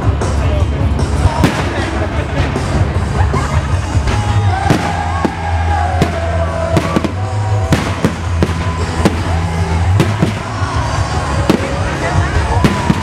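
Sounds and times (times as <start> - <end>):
music with steady bass: 0.0 - 13.0
fireworks bursting with sharp bangs: 1.2 - 2.9, 3.8 - 13.0.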